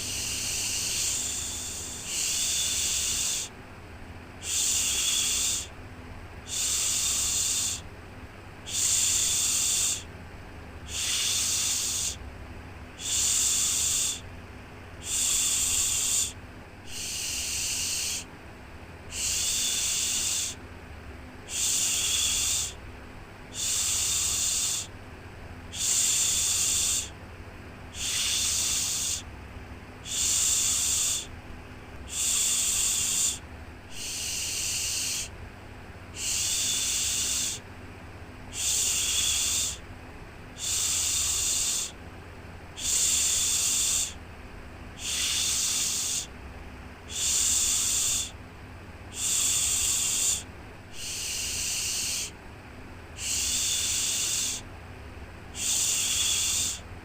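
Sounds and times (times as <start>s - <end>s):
person shushing: 0.0s - 3.5s, 15.0s - 18.3s, 27.9s - 29.3s, 30.0s - 31.3s, 32.0s - 35.4s, 36.2s - 37.6s, 38.5s - 39.8s, 40.6s - 42.0s, 42.8s - 44.2s, 45.0s - 46.3s, 47.1s - 48.4s, 49.2s - 52.3s, 53.2s - 54.7s, 55.6s - 56.9s
faint low hum: 0.0s - 57.0s.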